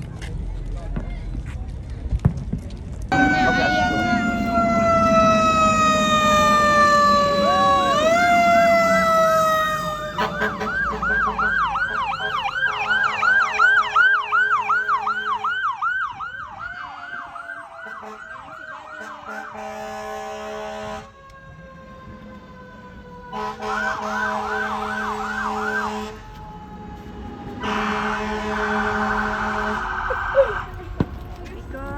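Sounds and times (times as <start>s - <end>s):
siren wailing and yelping: 3.1s - 19.2s, 28.8s - 30.8s
fainter siren wail: 3.1s - 31.0s.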